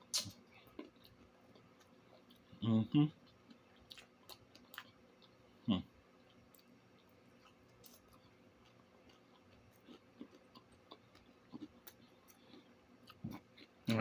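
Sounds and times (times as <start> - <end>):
person chewing: 0.0 - 5.5, 6.1 - 14.0
mouth clicks and smacks: 0.1 - 0.4.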